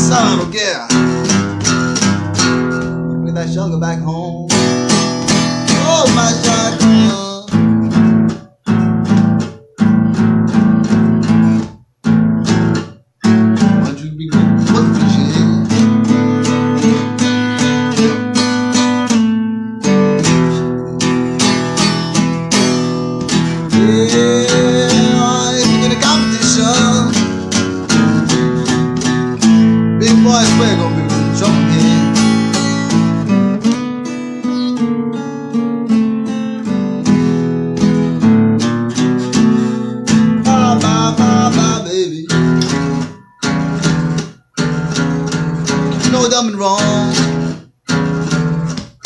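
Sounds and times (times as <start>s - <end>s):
acoustic guitar strumming chords: 0.0s - 49.0s.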